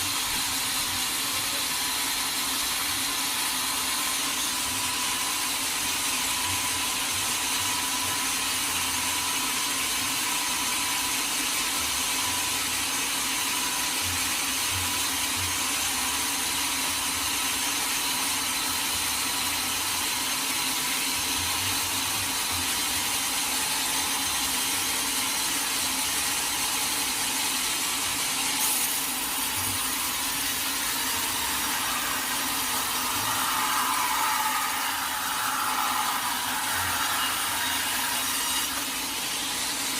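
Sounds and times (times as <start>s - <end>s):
sawmill motor hum: 0.0s - 39.9s
saw biting into wood: 28.5s - 39.9s.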